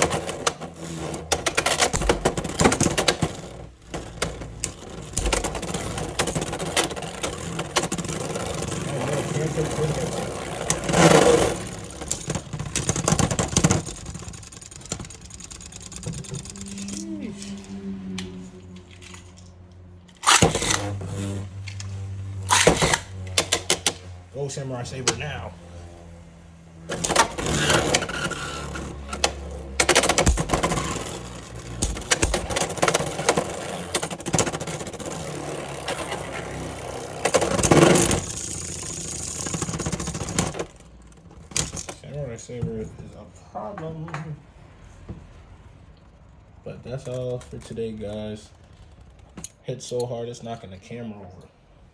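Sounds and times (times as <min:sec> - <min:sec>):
plastic and metal clacks: 0:00.0 - 0:24.2, 0:26.8 - 0:45.4, 0:46.9 - 0:49.6
spinning tops whirring: 0:26.8 - 0:41.8.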